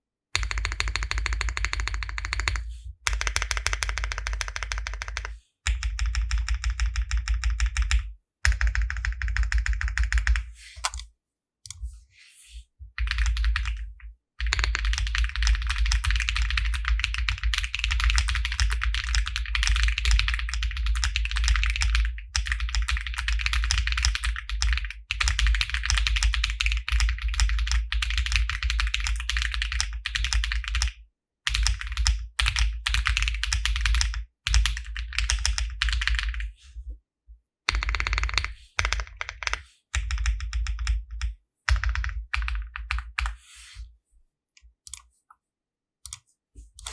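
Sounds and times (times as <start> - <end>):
mechanical keyboard typing: 0.4 - 11.0.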